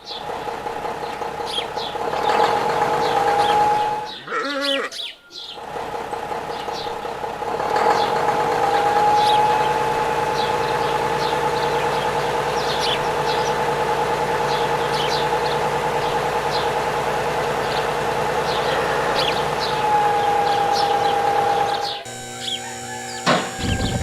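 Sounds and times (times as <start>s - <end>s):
birds chirping: 0.0s - 24.0s
toy electric motor whining: 2.3s - 4.2s, 8.0s - 11.6s, 18.6s - 24.0s.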